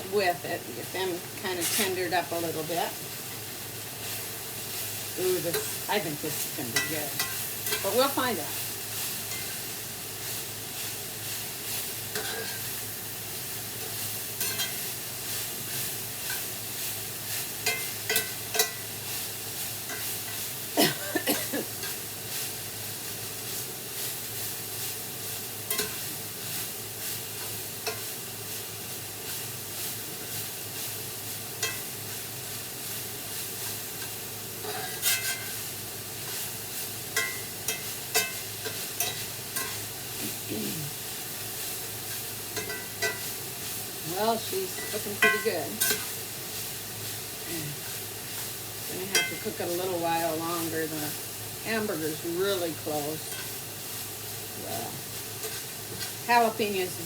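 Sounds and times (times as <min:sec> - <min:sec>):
meat sizzling in a frying pan: 0:00.0 - 0:57.0
utensil scraping a pan: 0:01.4 - 0:02.5, 0:05.2 - 0:08.2, 0:11.7 - 0:12.7, 0:25.7 - 0:28.1, 0:33.6 - 0:35.6, 0:37.2 - 0:41.0, 0:42.0 - 0:43.4, 0:44.1 - 0:46.2, 0:47.7 - 0:51.0, 0:52.6 - 0:53.6.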